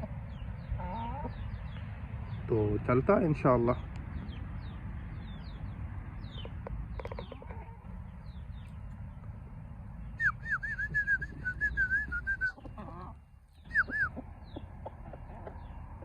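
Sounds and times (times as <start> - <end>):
chicks peeping: 0.0 - 16.0
whistled rising and falling notes: 10.2 - 12.6.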